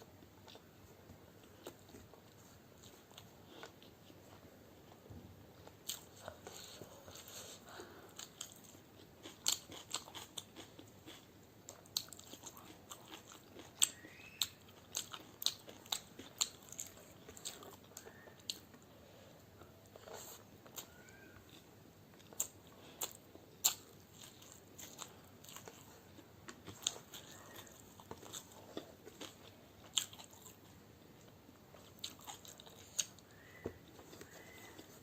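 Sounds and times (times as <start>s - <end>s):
person chewing crunchy food: 0.1s - 5.0s, 5.6s - 18.9s, 19.6s - 35.0s.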